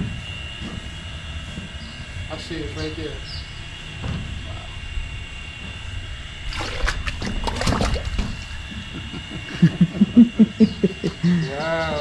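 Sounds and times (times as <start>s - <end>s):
fish splashing water: 6.4s - 8.7s.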